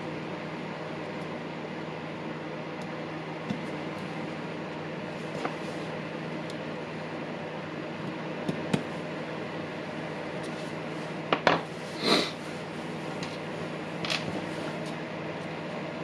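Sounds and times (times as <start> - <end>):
workshop hum: 0.0 - 16.0.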